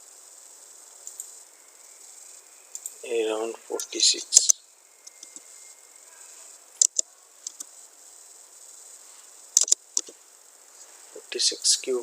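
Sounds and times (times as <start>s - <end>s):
faint hiss: 0.0s - 12.0s
sharp computer clicks: 2.7s - 3.0s, 3.8s - 5.5s, 6.8s - 7.7s, 9.5s - 10.2s.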